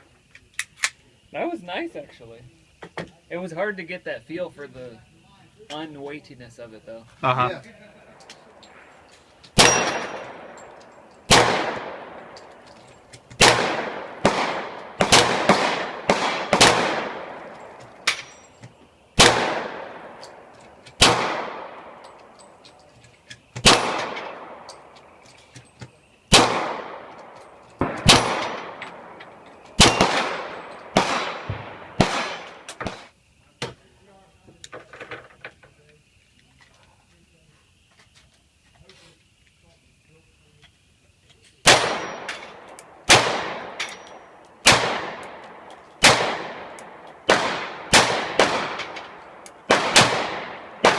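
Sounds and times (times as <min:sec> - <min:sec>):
echoing pistol shots: 0:09.5 - 0:12.6, 0:13.4 - 0:18.3, 0:19.2 - 0:22.4, 0:23.6 - 0:25.1, 0:26.3 - 0:33.1, 0:41.6 - 0:50.9.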